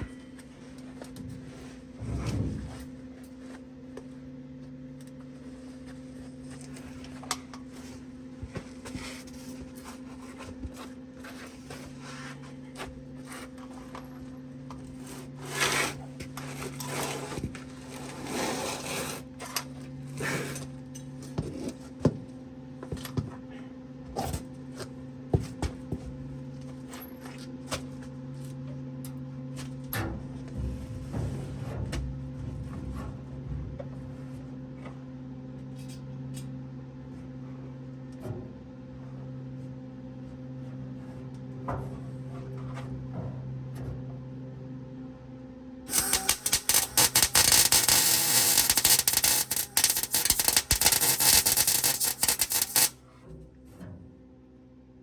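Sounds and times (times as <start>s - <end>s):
steady hum: 45.8s - 53.2s
clicks and scraping: 45.9s - 52.9s
welder arc crackling: 45.9s - 53.0s.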